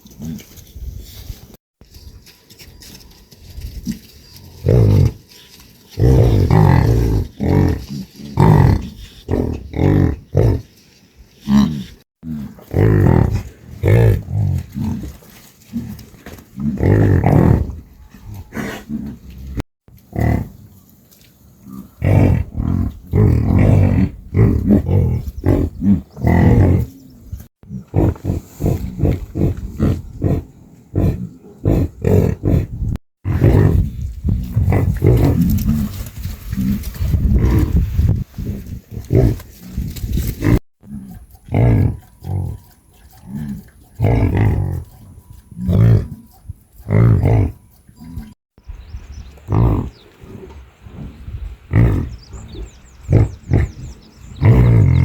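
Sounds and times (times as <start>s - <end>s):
cattle lowing: 3.6s - 20.8s, 21.5s - 48.4s, 49.2s - 55.0s.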